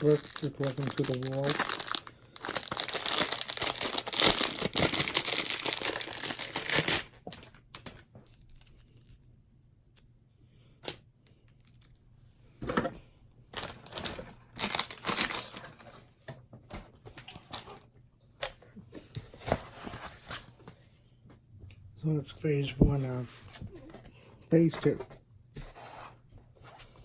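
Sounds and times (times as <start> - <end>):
packaging crinkling and tearing: 0.0 - 9.2, 13.6 - 15.8.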